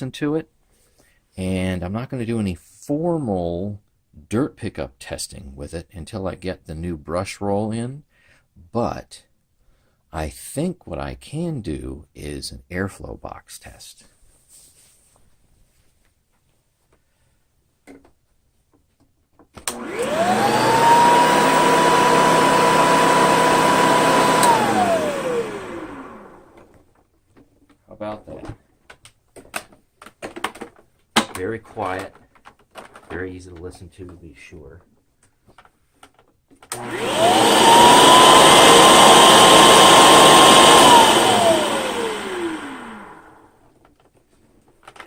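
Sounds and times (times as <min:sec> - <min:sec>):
vacuum cleaner motor whine: 0:19.7 - 0:26.8, 0:36.7 - 0:43.6.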